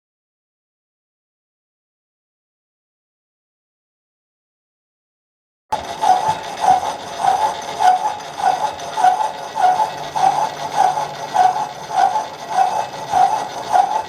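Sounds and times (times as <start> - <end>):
drill press humming: 5.7 - 14.0
repeating chirp of boring bar: 5.8 - 14.0.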